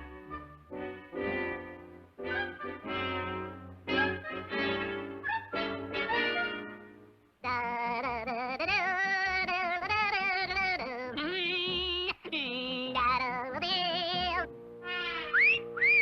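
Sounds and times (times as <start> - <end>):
high wavering sung melody: 14.0 - 16.0.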